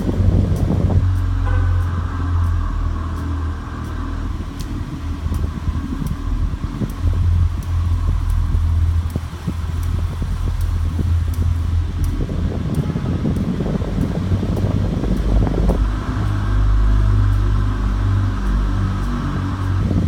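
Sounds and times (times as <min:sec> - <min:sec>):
light repeating click: 0:00.0 - 0:15.8
car engine droning: 0:00.0 - 0:20.0.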